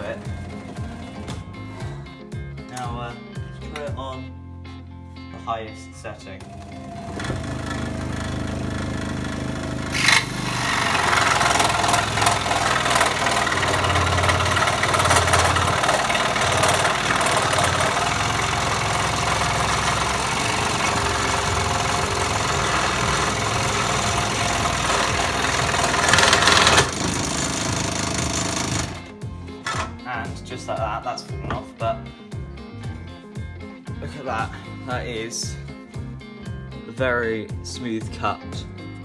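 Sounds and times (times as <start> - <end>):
scroll saw cutting wood: 0.0 - 1.4, 6.4 - 30.0.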